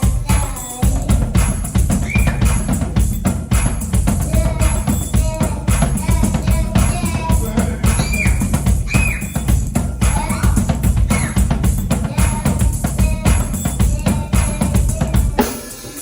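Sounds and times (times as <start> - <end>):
drum kit beat: 0.0 - 16.0
pitched instrument lines: 0.0 - 16.0.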